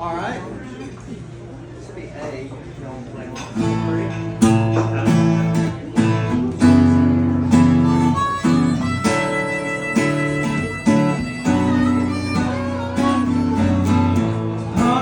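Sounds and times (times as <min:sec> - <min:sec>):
acoustic guitar chords: 0:03.6 - 0:15.0
sustained melody line: 0:07.4 - 0:15.0.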